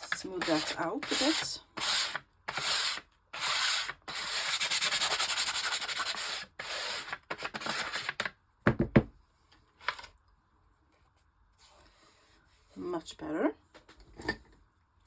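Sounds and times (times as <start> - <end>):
hand sanding wood: 0.0 - 7.2.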